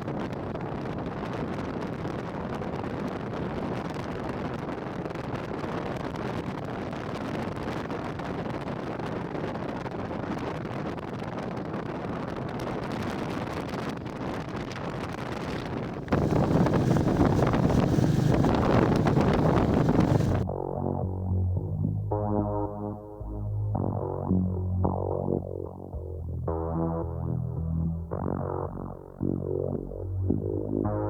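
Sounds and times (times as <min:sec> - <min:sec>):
wind noise on microphone: 0:00.0 - 0:22.0.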